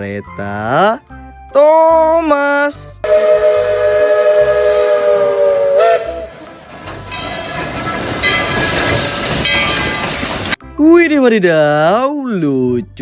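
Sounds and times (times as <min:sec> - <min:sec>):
steam whistle: 0:03.0 - 0:06.6
steam train chuffing: 0:03.0 - 0:10.6.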